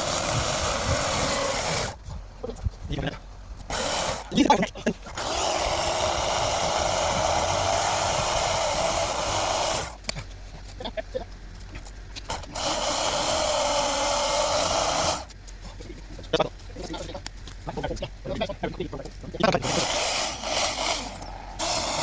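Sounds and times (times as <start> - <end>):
electric chainsaw cutting wood: 0.0 - 2.0, 3.7 - 4.4, 5.2 - 10.0, 12.3 - 15.3, 19.6 - 22.0.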